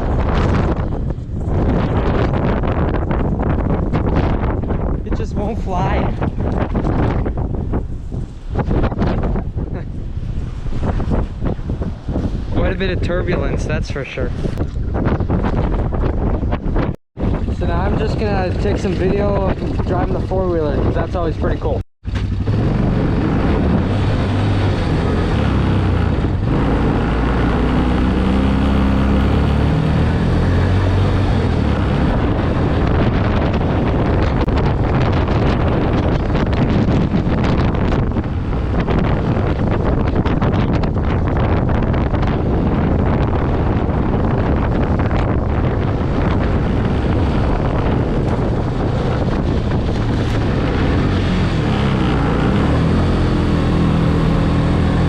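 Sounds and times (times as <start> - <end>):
wind rushing over microphone: 0.0 - 55.0
atv engine running: 22.0 - 55.0.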